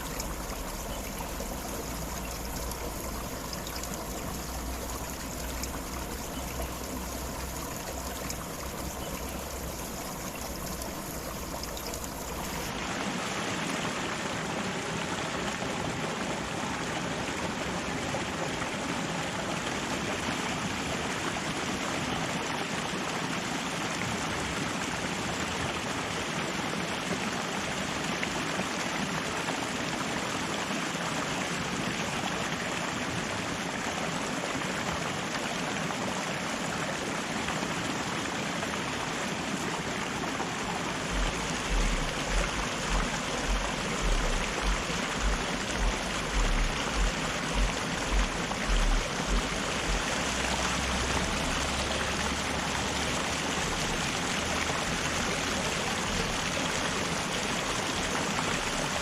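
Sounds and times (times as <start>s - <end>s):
river water rushing over rocks: 0.0s - 59.0s
low thumps: 41.1s - 50.1s
low rumble: 41.1s - 50.2s.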